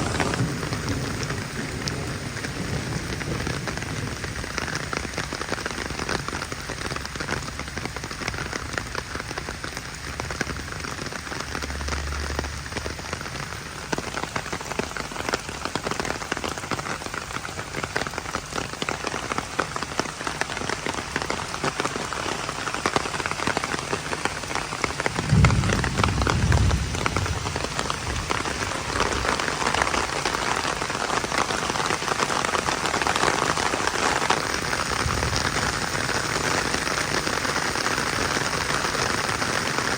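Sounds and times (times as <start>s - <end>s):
heavy rain patter: 0.0s - 39.9s
low rumble: 10.7s - 13.9s, 25.1s - 30.1s.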